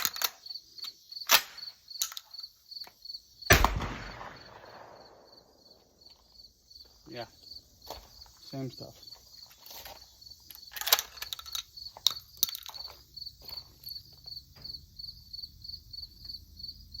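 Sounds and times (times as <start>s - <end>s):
crickets chirping: 0.0s - 17.0s
handling clicks and rattles: 9.6s - 13.0s.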